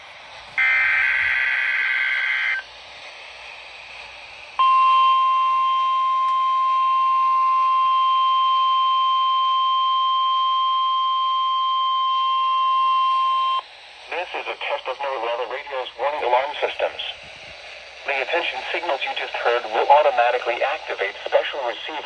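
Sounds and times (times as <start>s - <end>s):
radio hiss: 0.0s - 4.6s, 12.7s - 22.0s
steady warning alarm tone: 0.6s - 2.7s, 4.6s - 17.1s.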